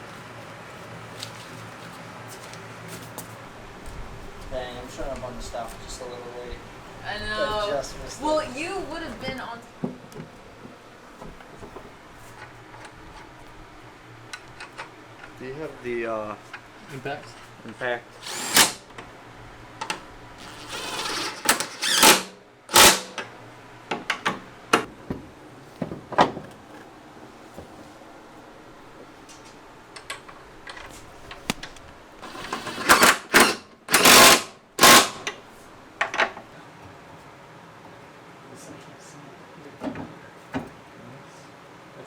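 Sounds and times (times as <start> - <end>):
impact wrench rattling bursts: 18.2 - 18.9, 20.4 - 23.3, 32.2 - 35.4.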